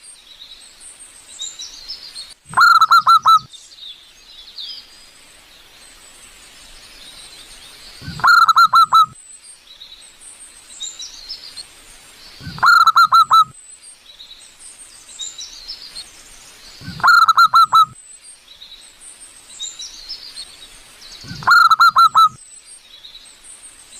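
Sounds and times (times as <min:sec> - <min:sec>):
small birds chirping: 0:00.0 - 0:23.9
dove cooing: 0:02.5 - 0:03.5, 0:08.0 - 0:09.2, 0:12.4 - 0:13.5, 0:16.8 - 0:18.0, 0:21.3 - 0:22.4.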